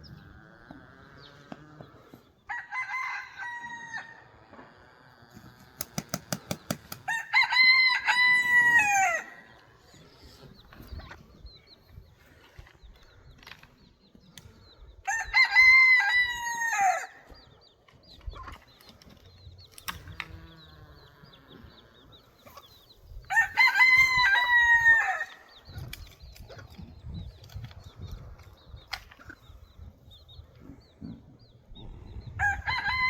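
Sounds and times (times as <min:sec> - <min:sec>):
rooster crowing: 0:02.5 - 0:04.2, 0:07.1 - 0:09.4, 0:32.4 - 0:33.0.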